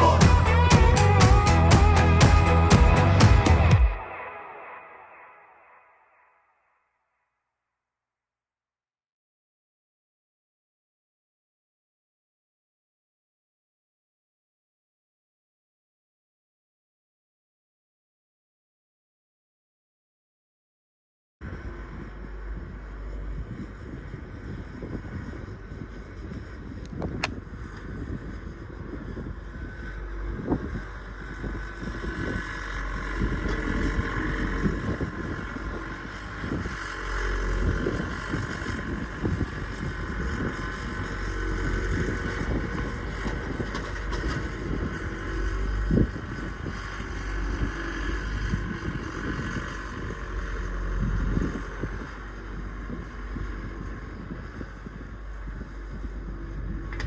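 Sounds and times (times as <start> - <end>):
engine running: 0.0 - 4.2, 21.4 - 57.0
wind buffeting microphone: 21.4 - 57.0.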